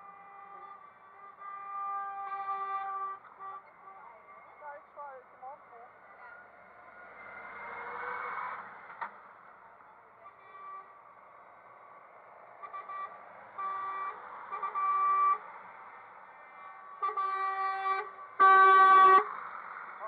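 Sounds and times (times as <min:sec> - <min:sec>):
truck horns honking: 0:00.0 - 0:06.4, 0:10.2 - 0:11.0, 0:12.6 - 0:15.5, 0:16.4 - 0:19.4.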